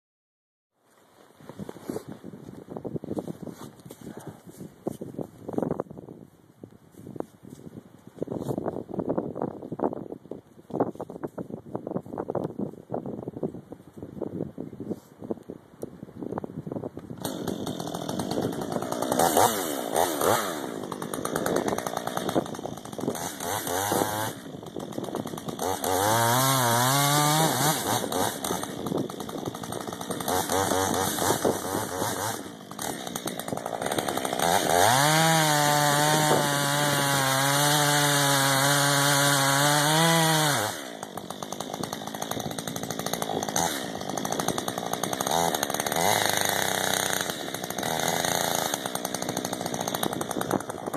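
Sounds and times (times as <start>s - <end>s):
chainsaw revving: 17.2s - 50.9s.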